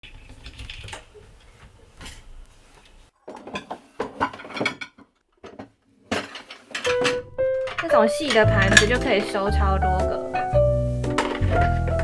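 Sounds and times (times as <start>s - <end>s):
dishes clinking and clattering: 3.3s - 9.4s, 11.0s - 12.0s.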